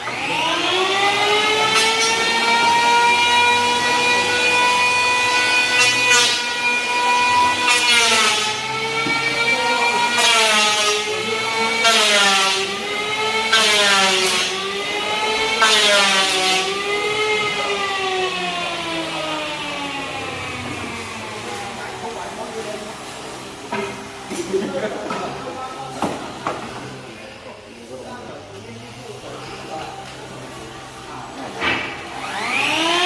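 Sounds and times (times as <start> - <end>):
power tool motor whine: 0.0 - 10.2, 32.0 - 33.0.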